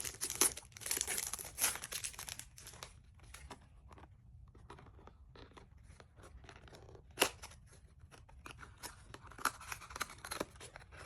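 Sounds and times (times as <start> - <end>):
packaging crackling and tearing: 0.0 - 3.5.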